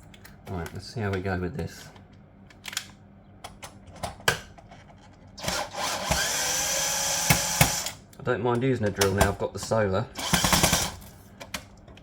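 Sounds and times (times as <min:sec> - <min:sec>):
cordless drill motor: 0:05.4 - 0:08.0, 0:10.2 - 0:11.0.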